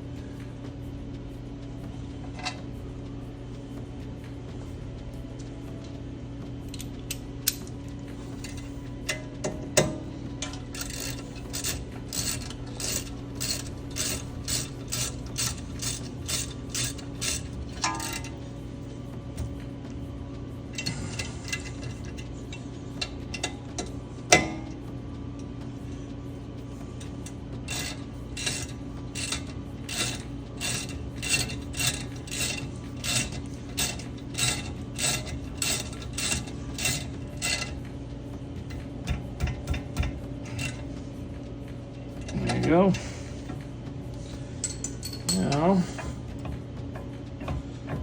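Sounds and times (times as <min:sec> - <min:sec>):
steady low hum: 0:00.0 - 0:48.0
ratchet wrench clicking: 0:08.4 - 0:18.5, 0:20.7 - 0:22.4, 0:27.0 - 0:37.9, 0:38.7 - 0:40.9, 0:44.2 - 0:48.0.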